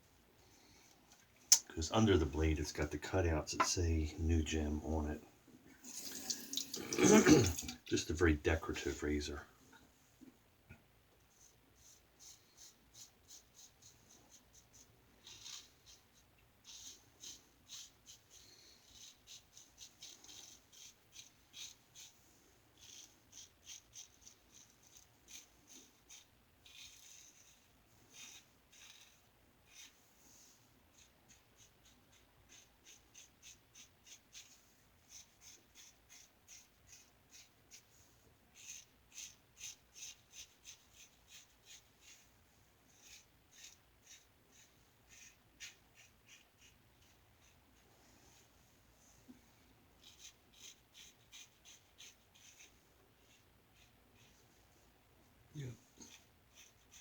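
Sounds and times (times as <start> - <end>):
razor scraping through stubble: 22.8 - 30.0.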